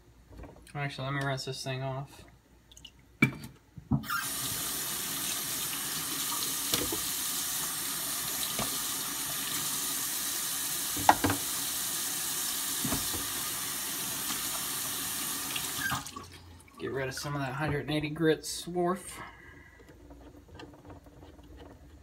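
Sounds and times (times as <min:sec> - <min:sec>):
tap water running into sink: 0:04.0 - 0:16.8.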